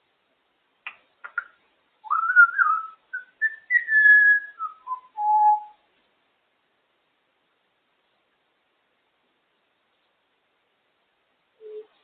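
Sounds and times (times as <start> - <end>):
parrot whistling descending notes: 2.1 - 5.7.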